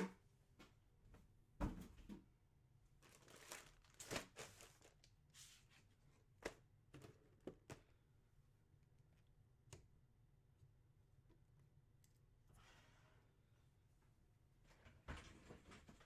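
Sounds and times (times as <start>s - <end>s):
packaging rustling and crinkling: 3.0s - 5.1s.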